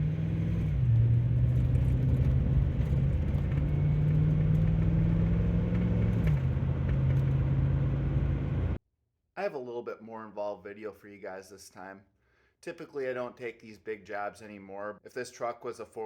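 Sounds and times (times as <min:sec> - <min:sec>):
vehicle engine running: 0:00.0 - 0:08.8.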